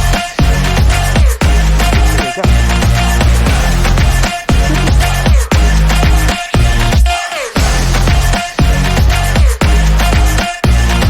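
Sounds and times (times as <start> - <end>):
drum and bass music: 0.0 - 11.0.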